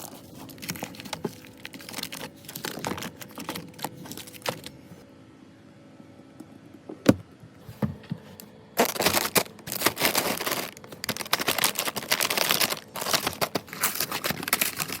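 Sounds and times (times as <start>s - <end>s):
plastic packaging rustling: 0.0s - 5.0s, 8.8s - 15.0s.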